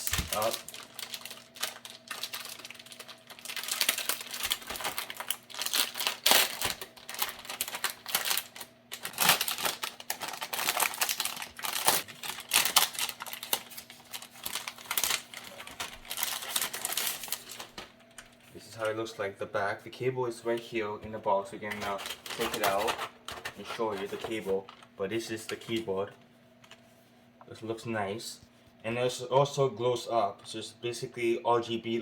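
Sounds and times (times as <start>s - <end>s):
packaging rustling and crinkling: 0.0s - 18.9s, 21.6s - 25.9s.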